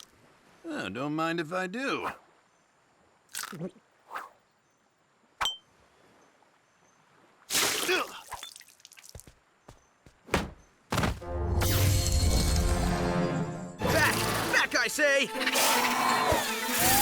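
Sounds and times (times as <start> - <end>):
thump: 10.3 - 11.2.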